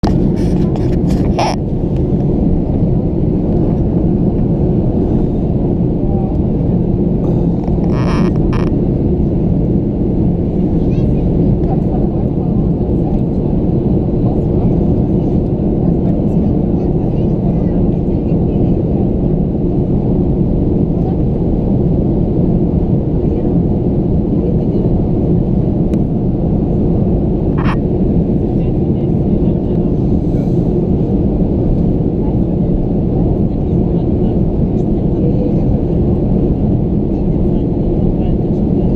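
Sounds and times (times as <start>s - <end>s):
aircraft cabin engine rumble: 0.0s - 38.9s.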